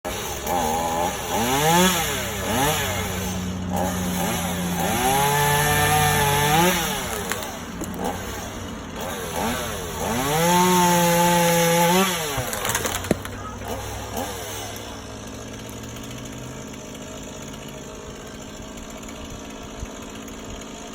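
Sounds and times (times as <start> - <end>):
chainsaw engine revving: 0.1 - 20.9.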